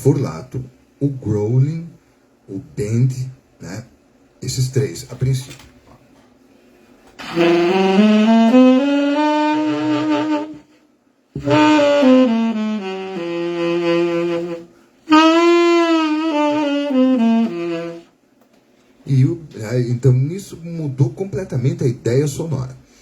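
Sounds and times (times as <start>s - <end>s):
saxophone playing: 7.2s - 10.8s, 11.4s - 18.1s.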